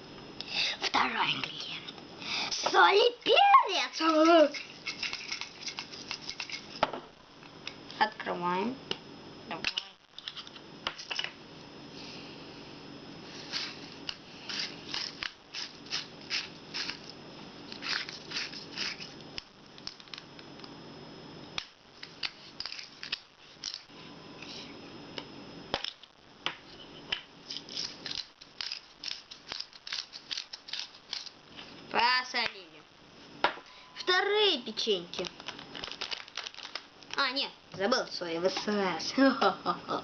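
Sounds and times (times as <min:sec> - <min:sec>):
pepper grinder crunching: 0:03.8 - 0:06.8, 0:13.5 - 0:20.2, 0:22.0 - 0:23.9, 0:27.4 - 0:31.4, 0:35.2 - 0:37.2.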